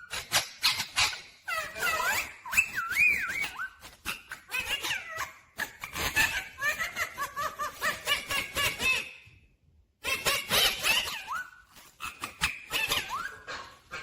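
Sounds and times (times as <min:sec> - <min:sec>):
parakeet chattering: 0:10.0 - 0:14.0.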